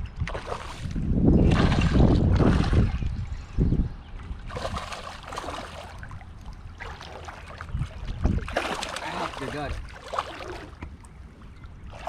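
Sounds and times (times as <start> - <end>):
water trickling and splashing: 0.2 - 3.4, 4.2 - 12.0.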